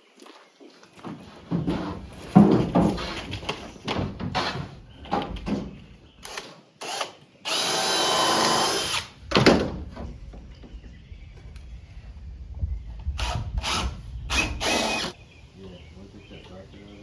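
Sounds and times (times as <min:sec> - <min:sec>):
knocking from handling framing: 0:01.4 - 0:05.9, 0:09.3 - 0:10.8
power drill whining: 0:06.2 - 0:09.2, 0:13.2 - 0:15.2.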